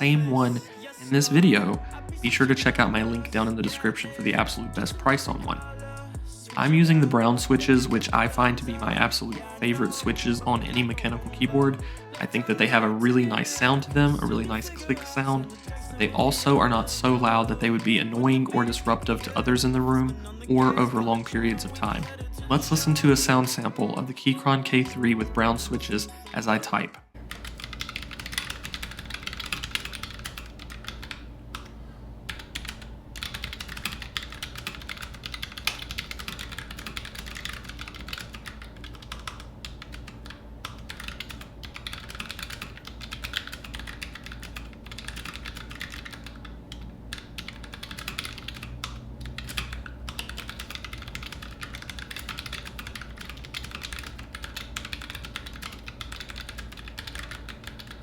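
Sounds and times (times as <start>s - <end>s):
fast typing on mechanical keyboard: 27.2s - 31.7s, 32.3s - 58.0s.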